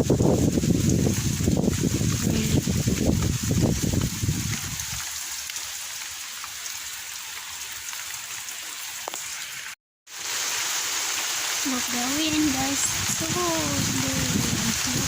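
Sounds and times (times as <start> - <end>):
wind buffeting microphone: 0.0 - 5.1, 12.2 - 15.0
heavy rain falling: 0.0 - 15.0.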